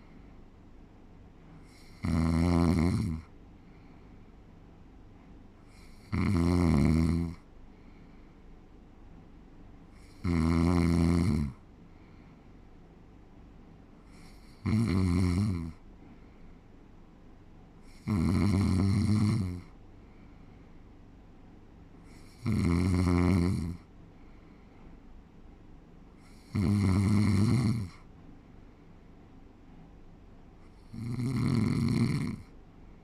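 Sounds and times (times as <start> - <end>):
quiet breathing: 0.0 - 12.9, 14.0 - 17.1, 17.7 - 25.3, 26.0 - 29.9, 30.6 - 33.0
person snoring: 1.7 - 3.3, 5.7 - 7.4, 10.0 - 11.6, 14.1 - 15.8, 17.9 - 19.6, 22.1 - 23.8, 26.3 - 28.0, 30.8 - 32.5.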